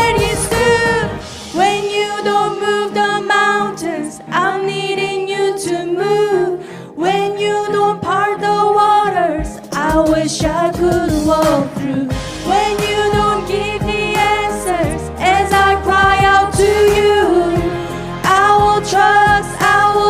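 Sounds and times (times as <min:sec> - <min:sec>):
worship team singing: 0:00.0 - 0:20.0
steady low accompaniment: 0:12.1 - 0:20.0.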